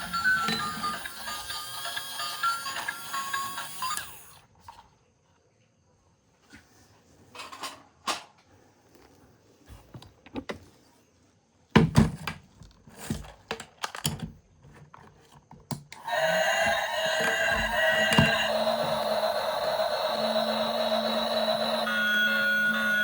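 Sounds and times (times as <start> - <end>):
music: 0.0 - 4.2
toy vehicles clicking and knocking: 15.9 - 23.0.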